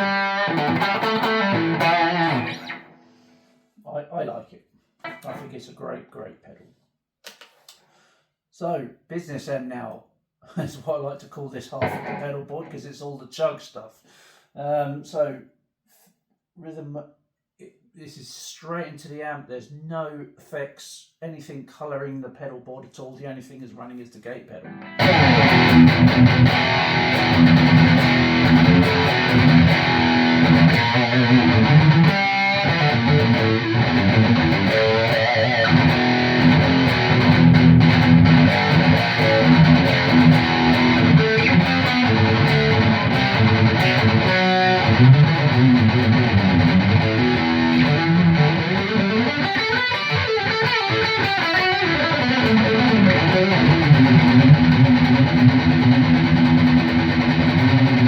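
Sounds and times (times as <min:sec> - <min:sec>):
distorted electric guitar riffing: 0:00.0 - 0:03.1, 0:11.8 - 0:12.5, 0:24.6 - 0:58.0.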